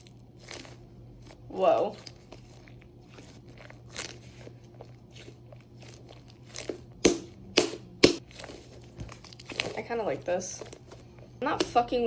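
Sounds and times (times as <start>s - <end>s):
squishy toy crackling and crunching: 0.0s - 7.0s.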